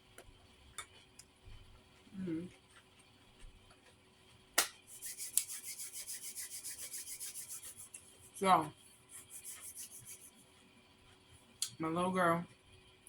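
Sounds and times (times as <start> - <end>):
dry scratchy rubbing strokes: 4.9 - 8.4, 9.1 - 10.5.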